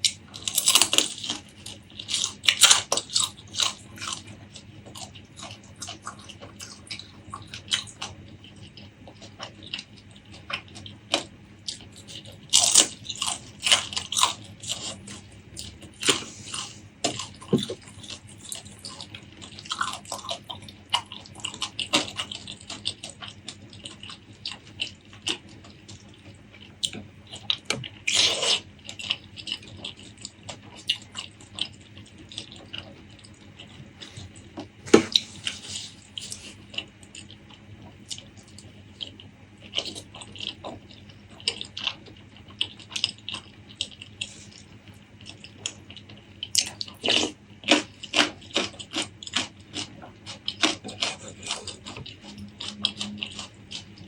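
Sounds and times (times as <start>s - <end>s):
wet chewing and smacking: 0.0s - 54.0s.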